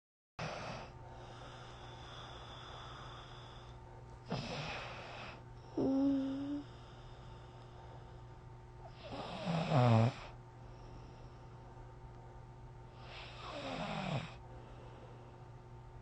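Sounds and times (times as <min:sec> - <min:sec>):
person snoring: 0:00.4 - 0:07.4, 0:08.9 - 0:10.4, 0:13.0 - 0:14.4
steady low hum: 0:00.4 - 0:16.0.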